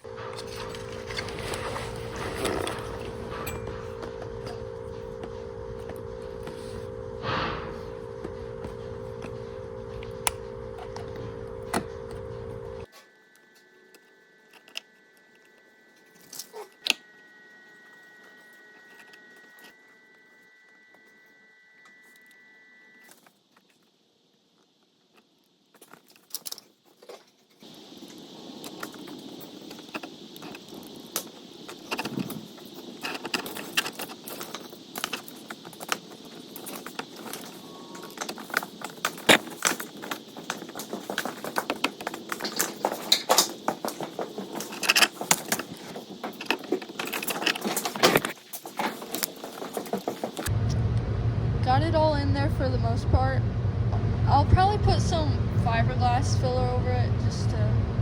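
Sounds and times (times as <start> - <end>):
steady hiss: 23.3 - 50.5
metallic clicks and crackles: 25.1 - 50.5.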